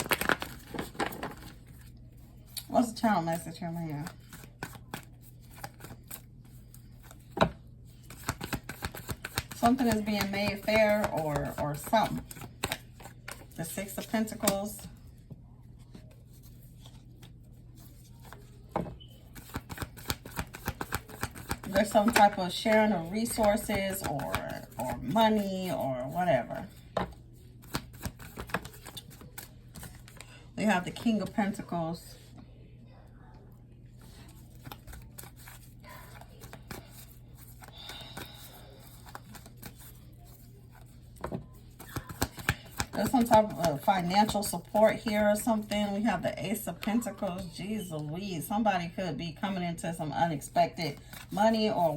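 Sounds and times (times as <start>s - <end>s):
cards clicking and rustling: 0.0s - 1.8s, 4.0s - 6.2s, 6.8s - 14.6s, 18.2s - 25.4s, 27.0s - 30.2s, 34.1s - 45.9s
low steady hum: 0.0s - 51.9s
cards clicking and flicking: 8.1s - 13.4s, 41.8s - 44.4s.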